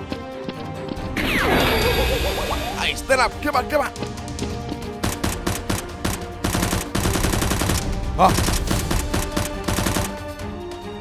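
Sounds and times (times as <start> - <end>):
background music: 0.0 - 11.0
automatic gunfire bursts: 5.0 - 10.2.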